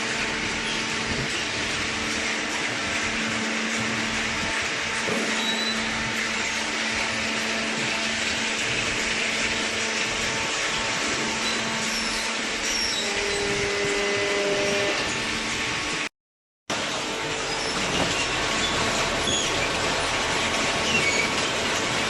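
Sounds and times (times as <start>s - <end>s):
baler motor and pump whir: 0.0s - 16.1s, 16.7s - 22.0s
high machine tone: 5.0s - 8.4s.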